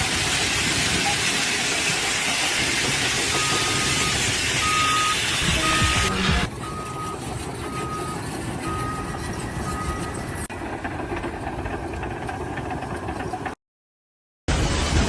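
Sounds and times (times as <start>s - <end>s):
engine and machinery rumble: 0.0s - 13.6s, 14.5s - 15.0s
reversing alarm beeps: 3.3s - 10.3s.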